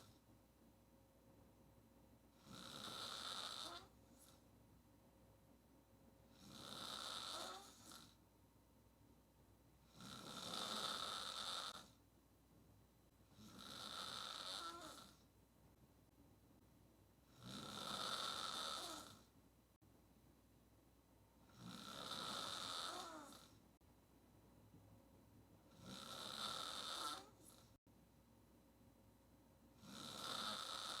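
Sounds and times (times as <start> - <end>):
quiet breaths: 0.0 - 8.4, 24.4 - 28.0, 29.6 - 31.0
woman snoring: 2.4 - 4.4, 6.3 - 8.2, 9.8 - 12.0, 13.3 - 15.2, 17.3 - 19.3, 21.5 - 23.6, 25.7 - 27.8, 29.8 - 31.0.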